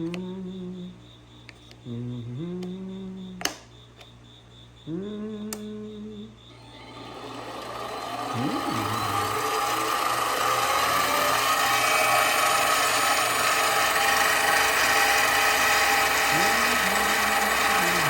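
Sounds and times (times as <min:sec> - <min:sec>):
metal lathe whine: 0:06.5 - 0:18.0.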